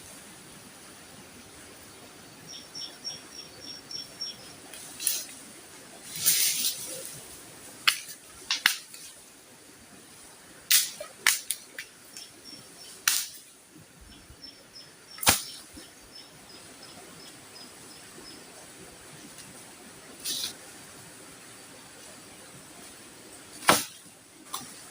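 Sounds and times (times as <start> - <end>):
faint insect chirping: 0.1 - 24.9.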